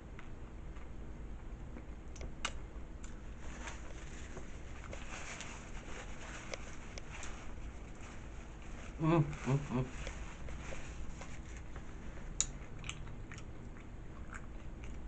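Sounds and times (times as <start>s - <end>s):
low steady hum: 0.0s - 15.0s
chewing crunchy food: 10.0s - 15.0s.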